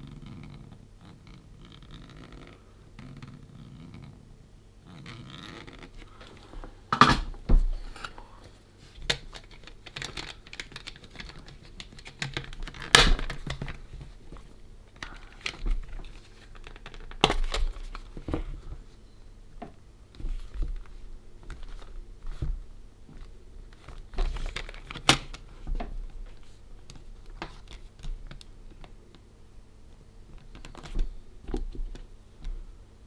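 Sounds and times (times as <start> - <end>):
crinkly plastic rustling: 7.5 - 19.0.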